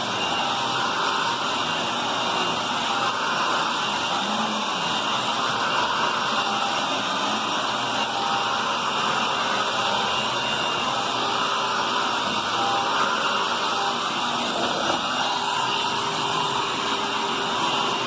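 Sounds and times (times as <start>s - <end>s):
upright vacuum cleaner running: 0.0s - 18.0s.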